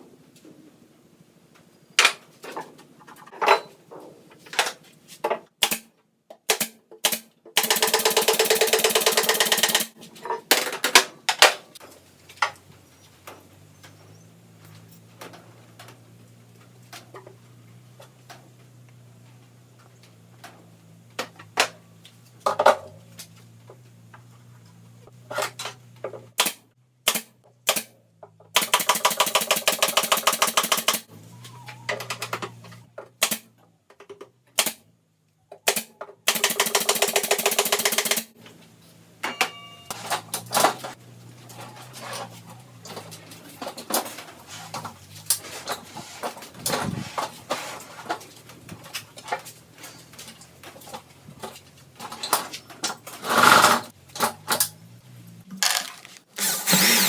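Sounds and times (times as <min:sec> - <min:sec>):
power tool rattling: 0:07.6 - 0:11.0, 0:36.3 - 0:38.3, 0:52.1 - 0:54.6, 0:55.6 - 0:57.0.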